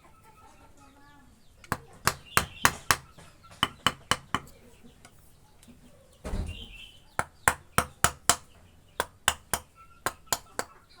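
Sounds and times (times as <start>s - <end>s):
mallet tapping chisel into wood: 1.7s - 4.6s, 7.2s - 10.8s.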